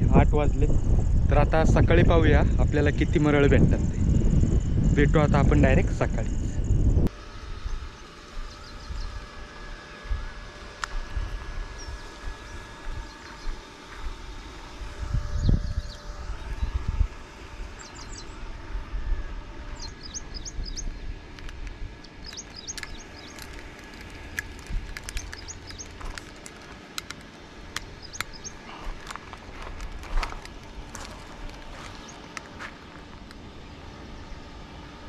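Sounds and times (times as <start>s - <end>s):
microphone rumble: 0.0s - 7.1s
small birds chirping: 7.6s - 10.4s, 17.7s - 18.4s, 19.8s - 27.1s, 27.8s - 33.1s.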